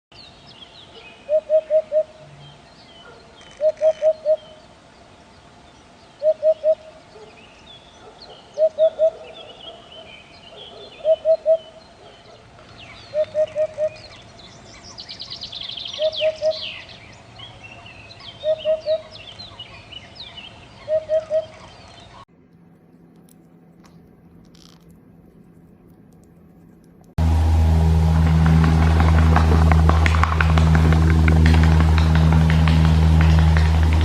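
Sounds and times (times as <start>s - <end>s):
small birds chirping: 0.2s - 22.3s
bird hooting: 1.2s - 2.2s, 3.0s - 4.6s, 6.2s - 7.0s, 8.3s - 11.8s, 13.1s - 14.2s, 15.3s - 17.5s, 18.2s - 19.9s, 20.8s - 21.8s.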